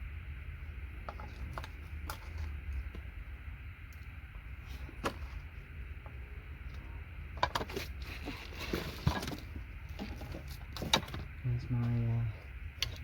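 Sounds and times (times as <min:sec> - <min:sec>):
low steady hum: 0:00.0 - 0:13.0
small components clicking and rattling: 0:06.7 - 0:12.0, 0:12.7 - 0:13.0.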